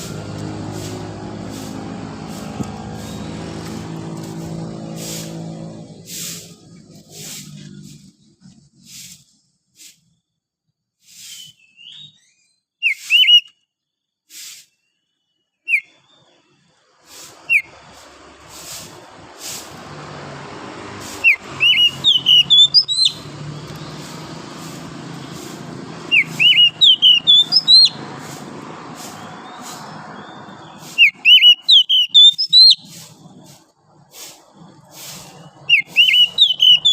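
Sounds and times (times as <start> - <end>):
bird singing whistled notes: 11.2 - 13.7, 14.7 - 16.5, 17.5 - 17.7, 21.2 - 24.0, 26.1 - 28.0, 29.2 - 33.0, 35.2 - 36.9.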